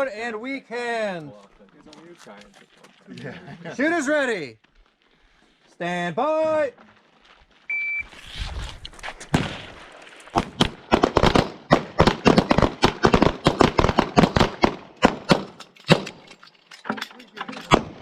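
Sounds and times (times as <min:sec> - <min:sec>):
pistol fire: 0:10.4 - 0:16.1.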